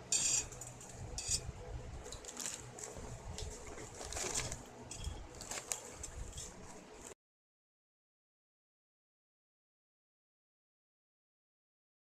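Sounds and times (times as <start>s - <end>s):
tableware clinking: 0.0s - 1.4s.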